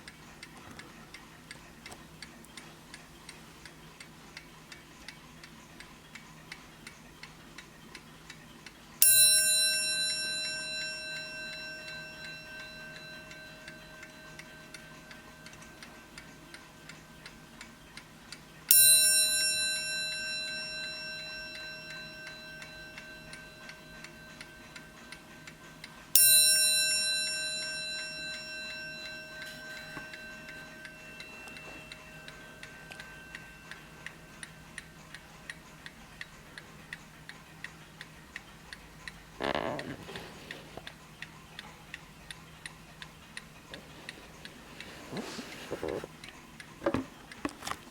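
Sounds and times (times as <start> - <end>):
clock ticking: 0.0 - 47.9
clock bell ringing: 9.0 - 17.6, 18.7 - 35.2.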